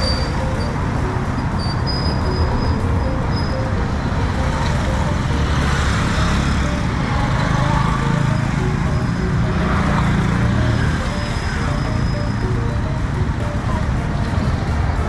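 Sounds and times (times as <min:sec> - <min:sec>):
road traffic passing: 0:00.0 - 0:15.0.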